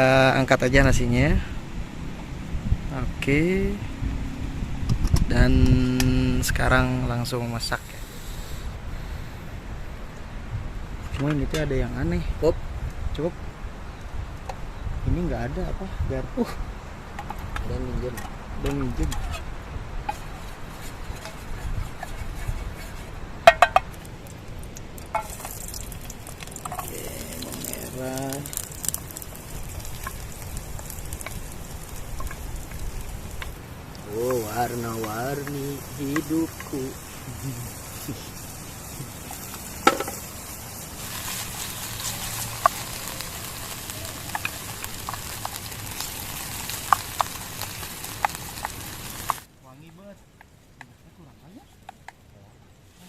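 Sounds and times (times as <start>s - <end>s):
shallots sizzling in oil: 20.0s - 49.5s
utensil tapping on pan: 23.4s - 24.0s, 25.1s - 25.6s, 34.2s - 36.8s, 39.8s - 40.2s.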